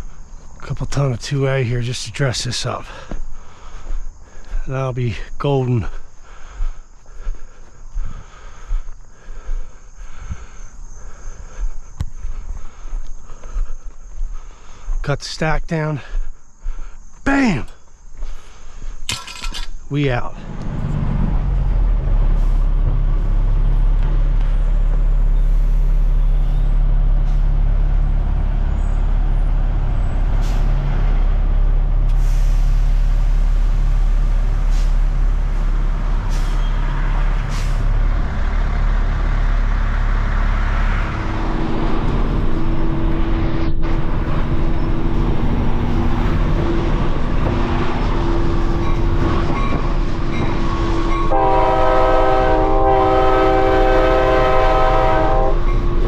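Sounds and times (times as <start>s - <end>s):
large engine droning: 20.1s - 56.0s.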